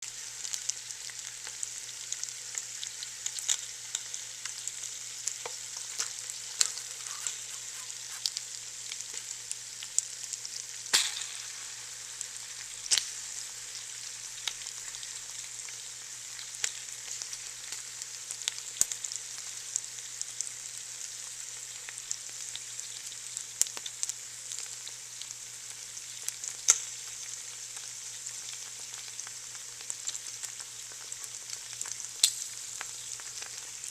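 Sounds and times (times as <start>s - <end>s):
chicken skin sizzling: 0.1s - 33.9s.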